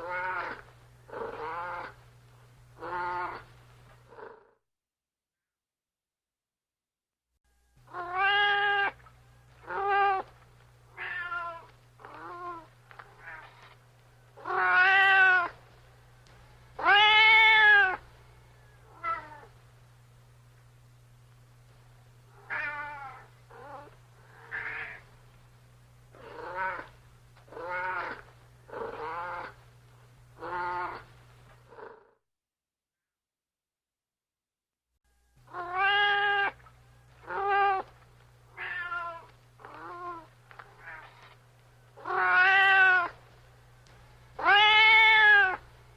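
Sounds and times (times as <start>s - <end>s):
cat meowing: 0.0s - 0.6s, 2.8s - 3.4s, 7.9s - 9.0s, 9.6s - 10.3s, 10.9s - 13.6s, 14.4s - 15.6s, 16.8s - 18.0s, 18.9s - 19.5s, 22.4s - 25.0s, 26.2s - 26.9s, 27.5s - 28.2s, 30.4s - 31.0s, 35.5s - 36.6s, 37.2s - 37.9s, 38.5s - 41.2s, 42.0s - 43.2s, 44.4s - 45.6s
steady low hum: 0.0s - 4.4s, 7.4s - 32.0s, 35.1s - 45.9s.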